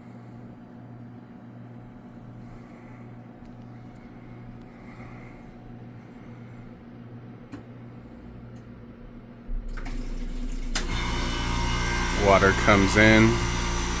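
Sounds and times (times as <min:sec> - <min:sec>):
water rushing in: 0:09.5 - 0:13.0
ice machine hum: 0:09.5 - 0:14.0.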